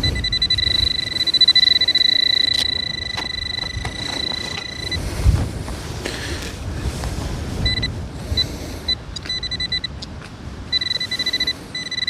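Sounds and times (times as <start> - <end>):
metal detector beeping: 0.0 - 5.1, 7.6 - 10.0, 10.7 - 12.0
wind rumbling on microphone: 0.0 - 12.0.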